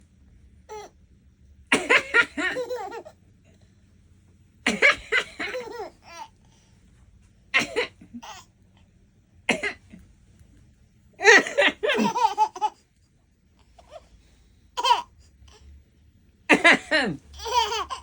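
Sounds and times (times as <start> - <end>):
baby giggling: 1.8 - 3.2, 4.7 - 6.3, 7.6 - 8.5, 11.2 - 12.8, 14.8 - 15.1, 16.5 - 18.0
person coughing: 7.6 - 8.1, 9.5 - 10.0, 16.5 - 17.2.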